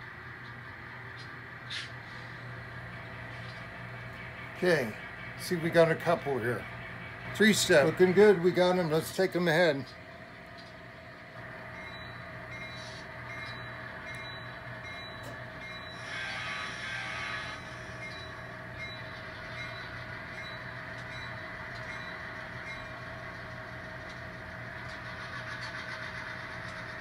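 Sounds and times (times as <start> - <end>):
model train humming: 0.0 - 27.0
hiss: 15.9 - 18.1.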